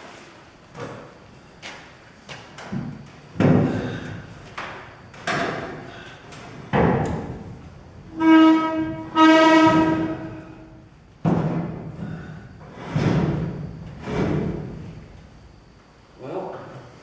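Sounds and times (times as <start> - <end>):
heavy knocks on metal framing: 3.4 - 4.2, 8.5 - 10.4, 11.2 - 12.0.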